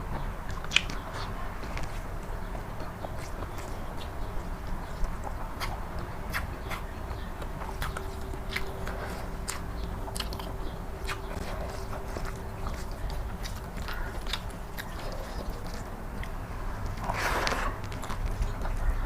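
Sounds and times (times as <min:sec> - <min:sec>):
close chewing and biting: 0:00.0 - 0:19.0
wet mouth clicks and smacks: 0:00.5 - 0:01.0.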